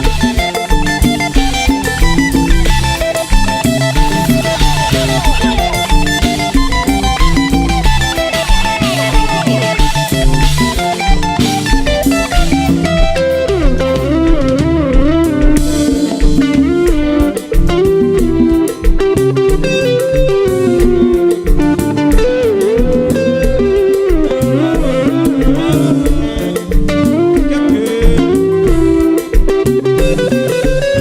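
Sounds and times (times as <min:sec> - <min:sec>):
bass: 0:00.0 - 0:31.0
electric guitar lead: 0:00.0 - 0:31.0
steady drum beat: 0:00.0 - 0:31.0.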